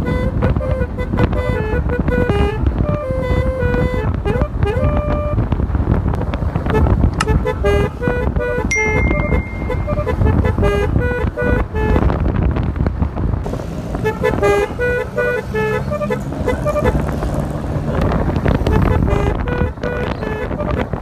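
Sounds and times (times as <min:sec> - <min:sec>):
musical air horn playing a tune: 0:00.0 - 0:05.5, 0:06.6 - 0:12.1, 0:13.9 - 0:17.1
engine and road noise: 0:00.0 - 0:21.0.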